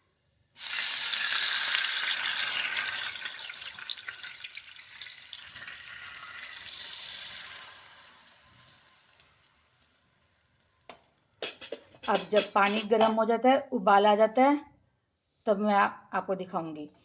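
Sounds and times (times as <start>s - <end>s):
water sizzling in hot fat: 0.6s - 10.6s.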